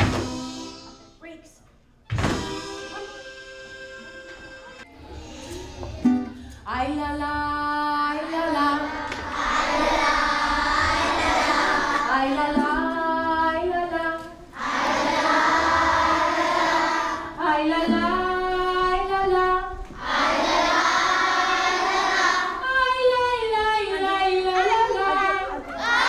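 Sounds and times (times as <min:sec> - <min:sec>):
children singing in chorus: 0:00.1 - 0:01.0, 0:08.2 - 0:13.6, 0:14.5 - 0:23.2, 0:23.9 - 0:26.0.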